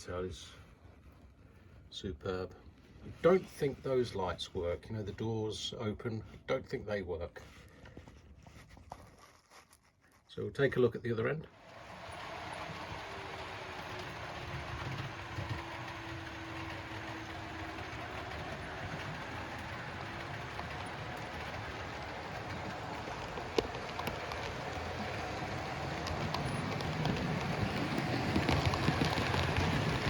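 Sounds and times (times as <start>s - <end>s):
model train rumbling on track: 11.4s - 30.0s.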